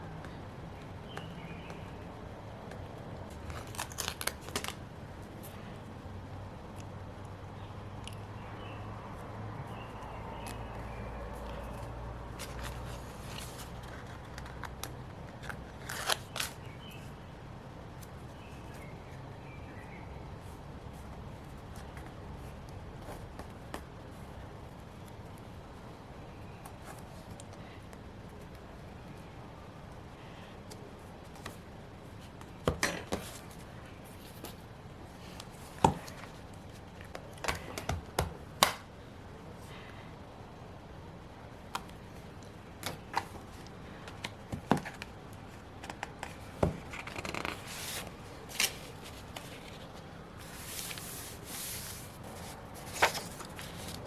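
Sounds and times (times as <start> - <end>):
paper clicks and rustles: 2.6 - 4.8, 11.5 - 16.6, 42.8 - 54.0.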